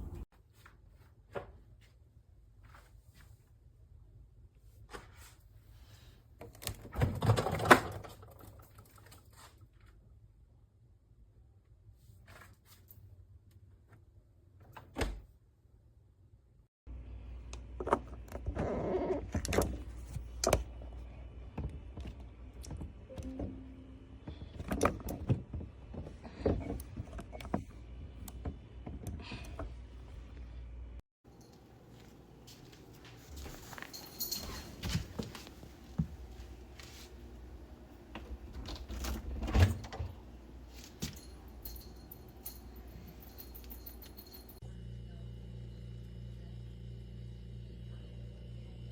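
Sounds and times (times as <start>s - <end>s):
faint light jingling: 31.3s - 35.8s, 40.7s - 44.6s.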